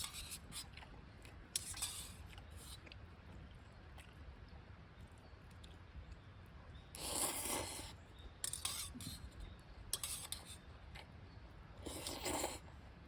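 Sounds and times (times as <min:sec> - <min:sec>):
chewing: 0:00.5 - 0:04.2
noodles being slurped: 0:07.0 - 0:08.0, 0:11.8 - 0:12.6.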